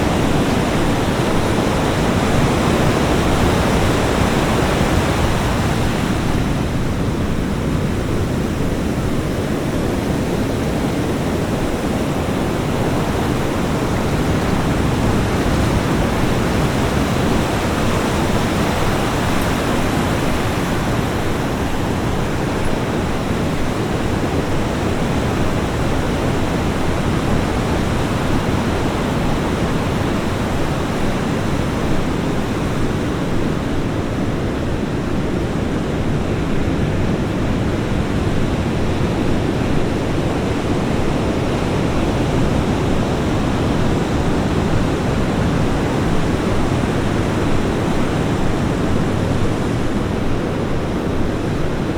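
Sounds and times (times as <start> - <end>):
ocean waves breaking on beach: 0.0 - 51.9.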